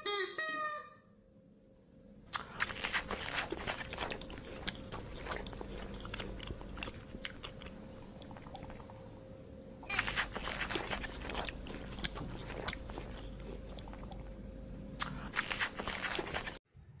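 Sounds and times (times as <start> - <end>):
giraffe chewing and crunching: 2.3 - 9.0, 9.9 - 14.4, 15.0 - 16.6.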